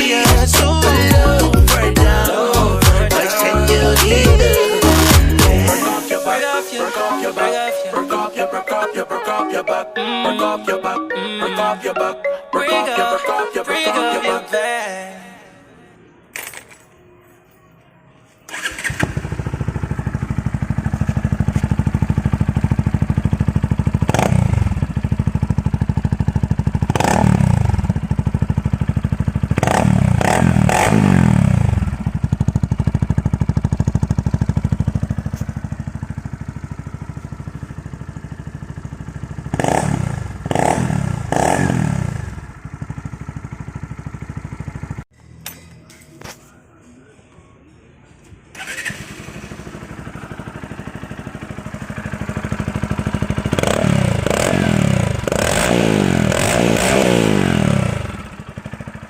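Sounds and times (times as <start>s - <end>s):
motorcycle engine revving: 18.5s - 45.1s, 48.5s - 59.0s.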